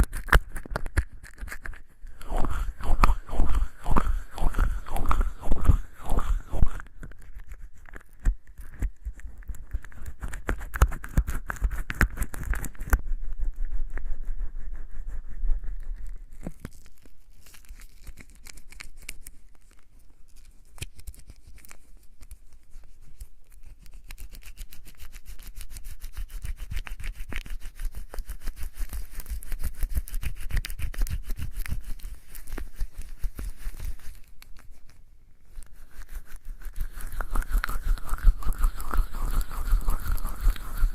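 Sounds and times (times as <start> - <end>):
wet hands rubbing in lather: 1.6 - 6.9, 25.0 - 40.9.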